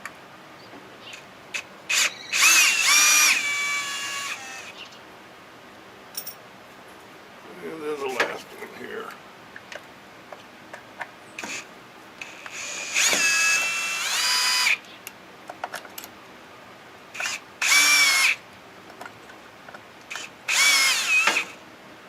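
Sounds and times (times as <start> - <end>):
power drill whining: 1.9 - 4.8, 12.2 - 14.8, 17.2 - 18.4, 20.1 - 21.6.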